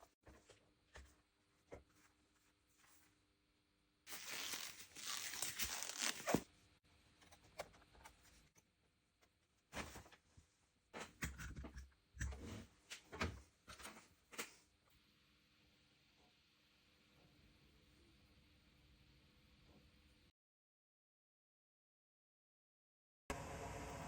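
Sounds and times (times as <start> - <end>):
ripping and tearing: 4.1 - 6.4.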